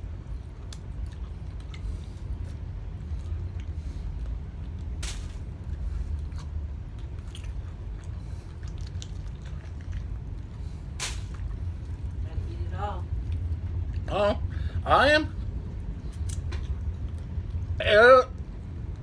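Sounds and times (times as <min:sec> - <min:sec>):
person chewing chicken wings: 0:00.4 - 0:05.0, 0:05.7 - 0:12.0.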